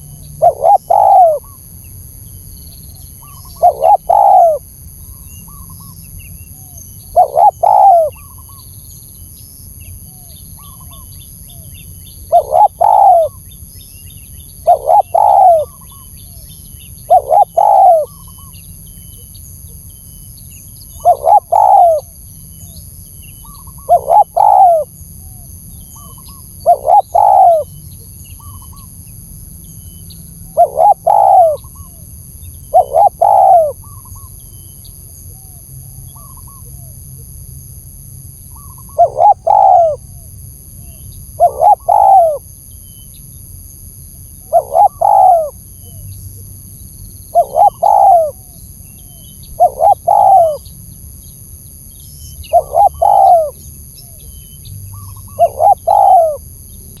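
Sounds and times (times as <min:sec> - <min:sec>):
dove cooing: 0:00.0 - 0:01.6, 0:03.2 - 0:04.7, 0:07.1 - 0:08.5, 0:12.3 - 0:13.4, 0:14.6 - 0:16.4, 0:17.1 - 0:18.5, 0:21.0 - 0:22.2, 0:23.5 - 0:24.9, 0:26.0 - 0:27.8, 0:30.5 - 0:32.0, 0:32.7 - 0:34.2, 0:38.6 - 0:42.5, 0:44.5 - 0:46.2, 0:47.3 - 0:50.7, 0:52.5 - 0:54.3, 0:54.9 - 0:56.5
small birds chirping: 0:00.0 - 0:25.0, 0:25.7 - 0:36.9, 0:38.4 - 0:43.5, 0:44.2 - 0:57.0.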